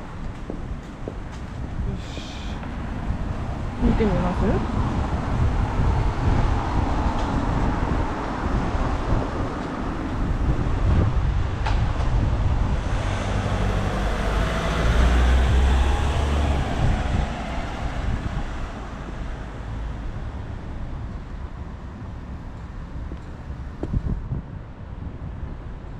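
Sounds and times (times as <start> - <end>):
road traffic passing: 0.0 - 25.9
heavy vehicle passing close: 1.9 - 21.0.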